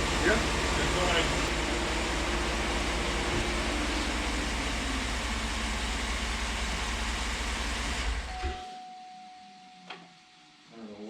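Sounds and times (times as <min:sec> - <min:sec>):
car engine idling: 0:00.0 - 0:08.5.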